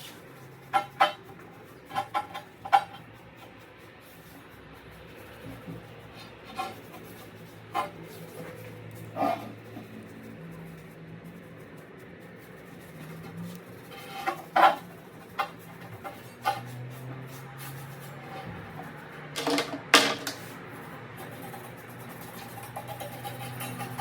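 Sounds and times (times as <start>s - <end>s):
sharp knocks and clatters: 18.3s - 24.0s.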